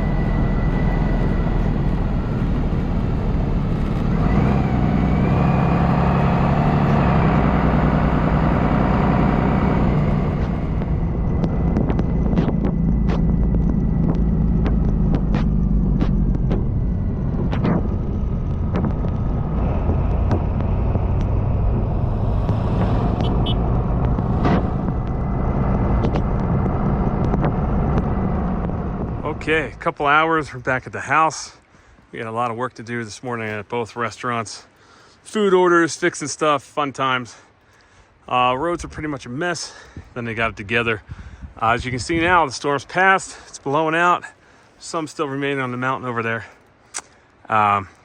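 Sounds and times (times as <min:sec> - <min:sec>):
vehicle engine running: 0:00.0 - 0:30.6
sharp clicks and knocks: 0:10.4 - 0:21.4, 0:25.8 - 0:29.2.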